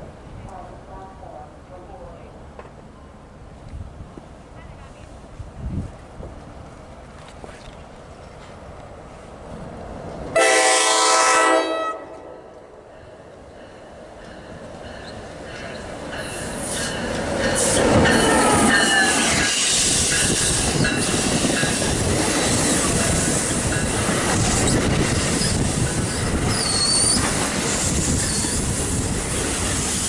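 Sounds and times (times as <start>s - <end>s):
train wheels rumbling on rails: 12.9s - 30.0s
high-pitched wheel squeals: 25.3s - 28.7s.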